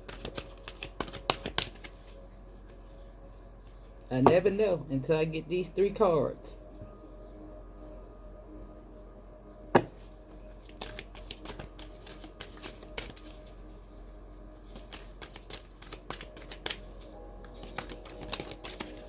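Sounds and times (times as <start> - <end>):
cards being shuffled: 0.0 - 2.2, 9.8 - 19.0.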